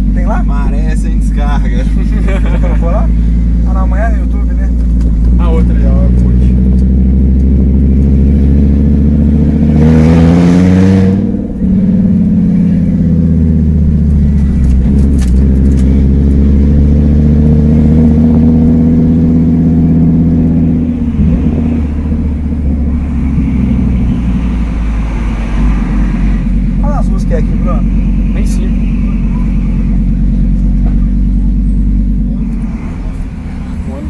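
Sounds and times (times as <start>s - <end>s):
car engine drone: 0.0s - 34.0s
wind buffeting microphone: 18.0s - 26.8s.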